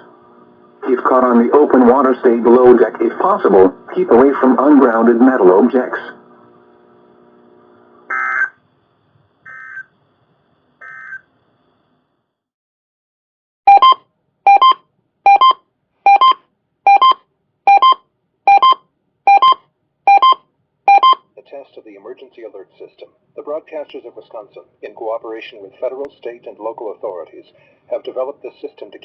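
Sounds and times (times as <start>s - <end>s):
short electronic beeps: 13.7s - 21.2s.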